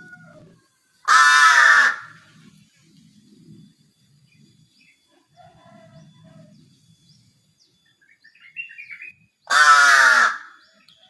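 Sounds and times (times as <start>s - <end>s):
crow chirping softly: 0.0s - 2.5s, 8.4s - 11.0s
crow cawing harshly: 1.0s - 2.2s, 9.5s - 10.6s.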